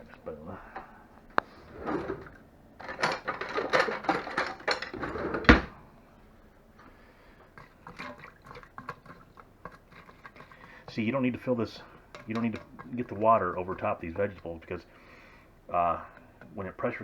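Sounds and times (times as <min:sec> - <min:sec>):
metal utensils clattering: 0:00.8 - 0:05.7, 0:07.6 - 0:14.8
drawer pulled open: 0:01.6 - 0:02.3, 0:03.0 - 0:05.8.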